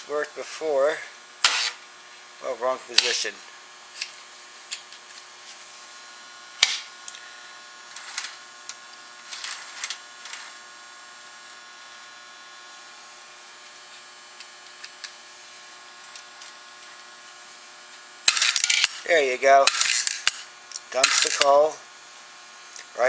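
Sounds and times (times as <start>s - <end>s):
electric hum: 0.0s - 23.0s
mechanism clicks and rattles: 19.7s - 20.4s.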